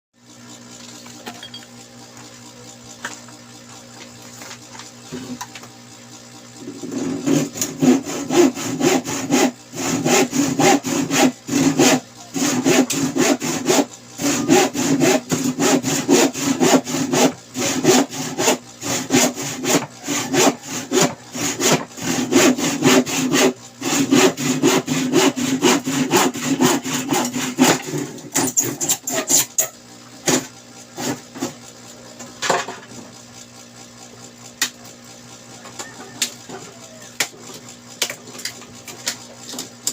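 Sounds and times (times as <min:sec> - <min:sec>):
hand tool scraping back and forth: 0:06.6 - 0:31.6, 0:35.7 - 0:38.6.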